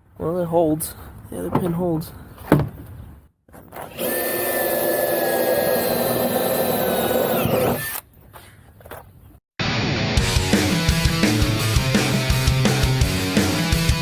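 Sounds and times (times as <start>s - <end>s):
power drill running: 3.9s - 8.0s.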